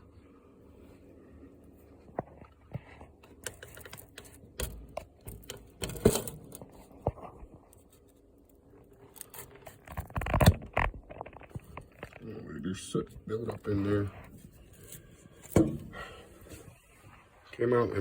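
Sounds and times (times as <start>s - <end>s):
handling clicks taps and scrapes: 2.0s - 12.3s.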